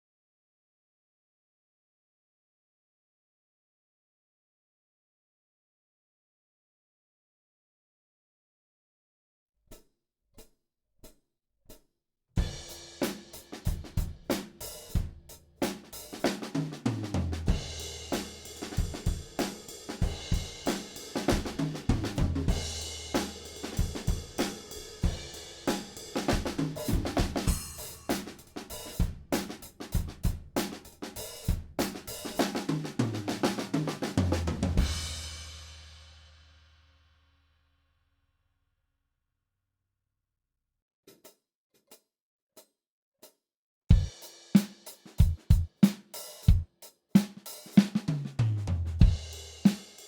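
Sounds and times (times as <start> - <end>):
drum kit groove: 12.4 - 36.2, 43.9 - 50.0.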